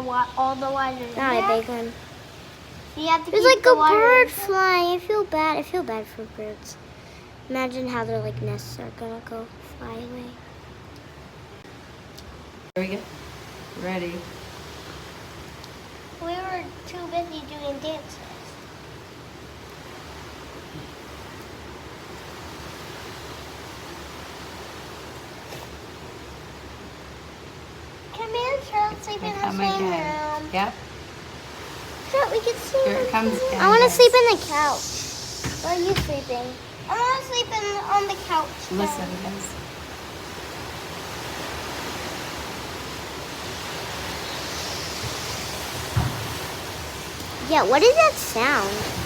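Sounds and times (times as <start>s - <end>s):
rain: 0.0s - 49.0s
strong wind: 0.0s - 49.0s
dull thump: 35.3s - 36.2s, 45.8s - 46.5s.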